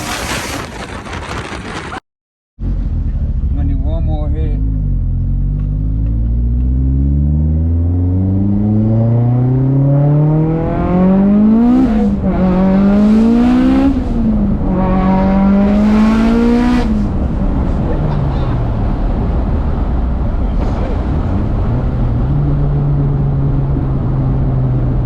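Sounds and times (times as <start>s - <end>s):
car engine revving under throttle: 4.5s - 19.9s.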